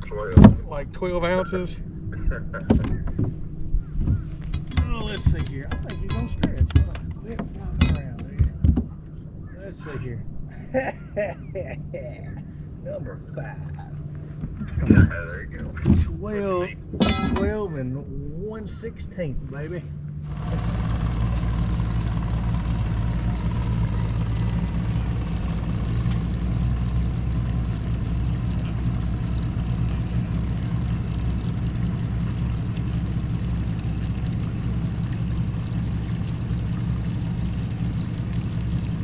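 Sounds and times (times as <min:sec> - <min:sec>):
outboard motor running: 0:00.0 - 0:10.1, 0:19.7 - 0:39.0.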